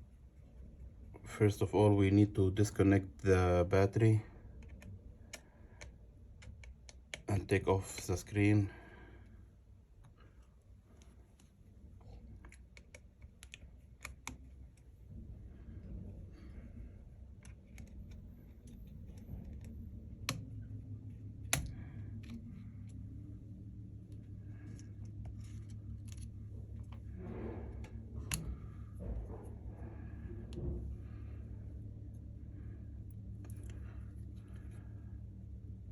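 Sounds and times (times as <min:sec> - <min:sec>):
low steady hum: 0:00.0 - 0:35.9
repair tools clicking on phone: 0:04.5 - 0:07.3, 0:21.4 - 0:23.0.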